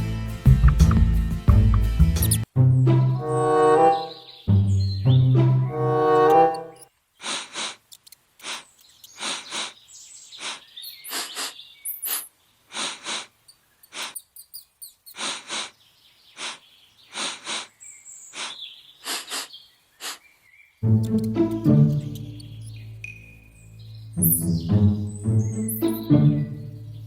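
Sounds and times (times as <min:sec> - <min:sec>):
mouse chirping squeaks: 0:02.2 - 0:02.4, 0:06.2 - 0:09.8, 0:10.4 - 0:15.7, 0:16.4 - 0:20.2, 0:21.0 - 0:26.1.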